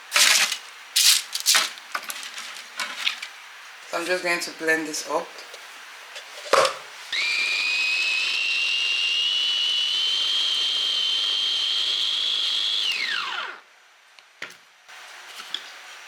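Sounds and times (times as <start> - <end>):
blender motor whining: 7.1 - 13.7.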